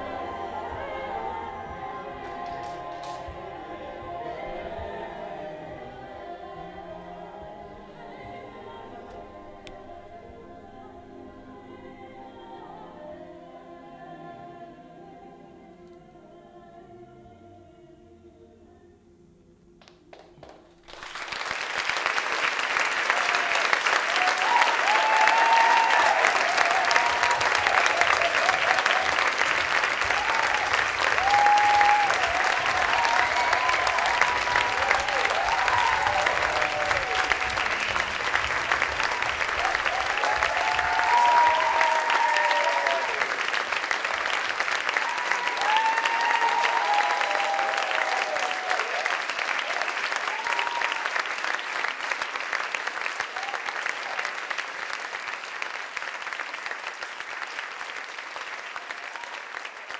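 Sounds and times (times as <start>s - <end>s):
audience applauding: 0.0s - 6.1s, 19.8s - 59.9s
whoops and cheers: 23.0s - 44.0s, 44.6s - 51.4s, 53.2s - 54.5s, 58.7s - 59.6s.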